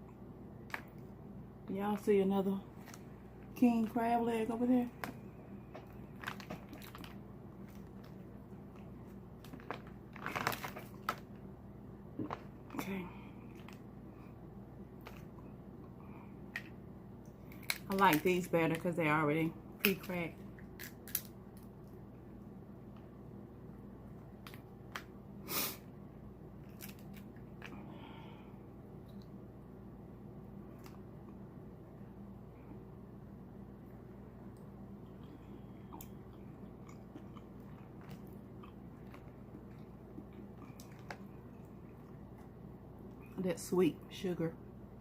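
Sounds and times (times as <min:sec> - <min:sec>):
crab shell crunching and clicking: 0:20.6 - 0:21.8.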